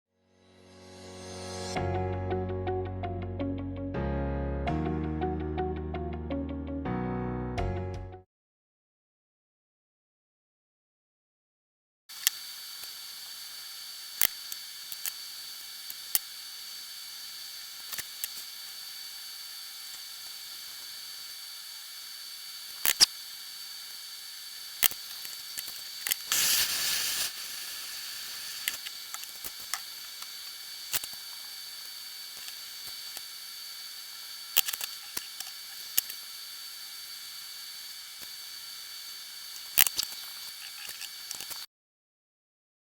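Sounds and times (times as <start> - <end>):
short hiss: 0.6 - 1.8, 12.1 - 41.7
small metal parts clicking: 22.7 - 23.1, 28.4 - 33.4, 34.2 - 36.3, 39.4 - 41.7.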